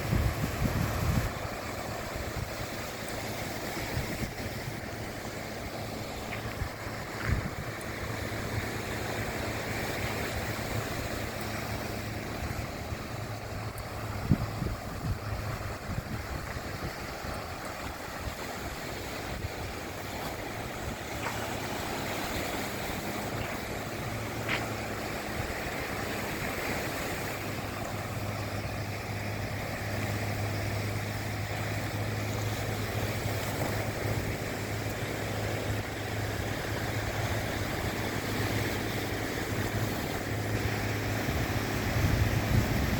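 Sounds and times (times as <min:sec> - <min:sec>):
low motor hum: 0:00.0 - 0:42.9
waves washing on shore: 0:00.0 - 0:42.9.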